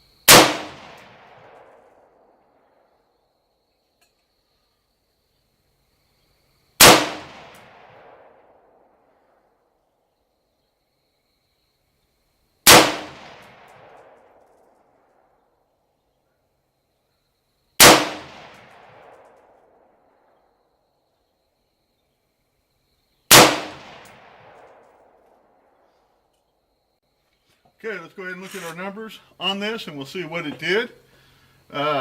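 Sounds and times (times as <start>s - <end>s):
gunshots with echo: 0.3s - 1.9s, 6.8s - 8.6s, 12.7s - 14.4s, 17.8s - 19.3s, 23.3s - 25.0s.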